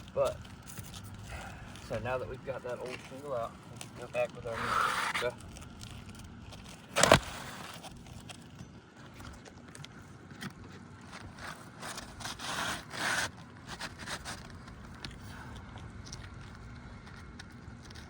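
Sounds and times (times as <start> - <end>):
roof shingle scraping: 0.1 - 9.4, 10.5 - 15.2.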